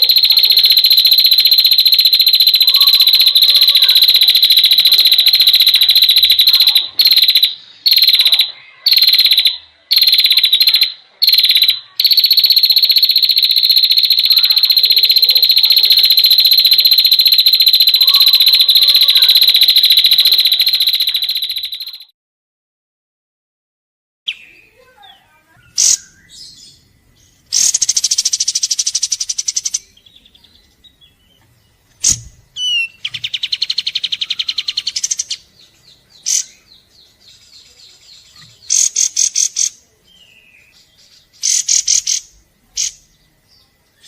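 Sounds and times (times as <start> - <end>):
faint lower chirping calls: 0.0 - 22.1, 24.3 - 44.0
high-pitched buzzing animal trill: 0.0 - 22.1.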